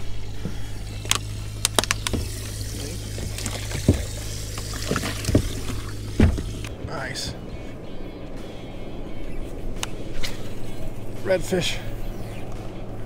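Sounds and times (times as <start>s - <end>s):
water trickling: 0.0s - 7.3s
low rumble: 0.0s - 13.0s
sharp clicks: 1.0s - 2.6s, 9.8s - 10.0s.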